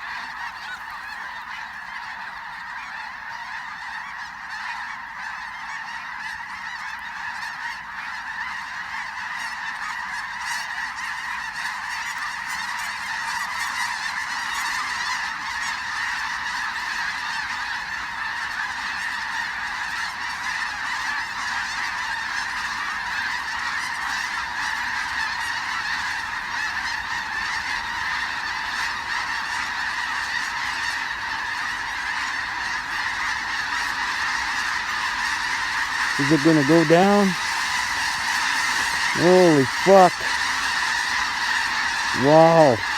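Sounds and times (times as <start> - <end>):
flock of geese honking: 0.0 - 42.9.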